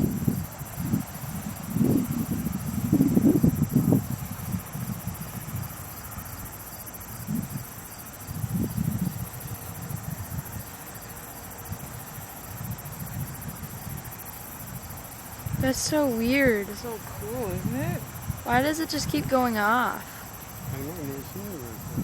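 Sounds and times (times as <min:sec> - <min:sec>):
crickets chirping: 0:00.0 - 0:22.0
low muffled rumbles: 0:20.6 - 0:22.0.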